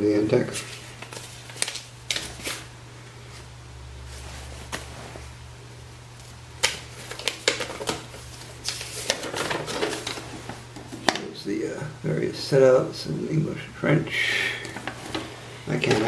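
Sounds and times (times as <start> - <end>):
low electrical hum: 0.0 - 16.0
paper pages rustling: 0.4 - 2.7, 4.1 - 5.4, 6.2 - 11.3.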